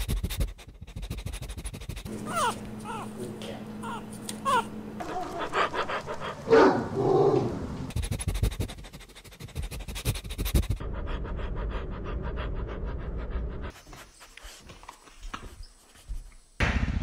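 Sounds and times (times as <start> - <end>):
puppy panting: 0.0 - 6.5, 7.9 - 14.8.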